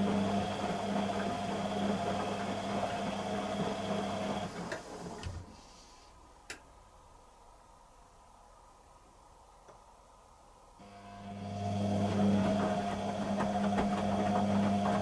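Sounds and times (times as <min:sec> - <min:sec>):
washing machine motor whine: 0:00.0 - 0:05.5, 0:10.8 - 0:15.0.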